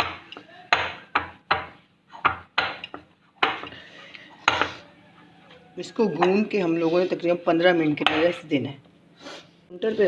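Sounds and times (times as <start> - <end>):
utensil knocking against a bowl: 0.0 - 3.8, 4.4 - 4.8.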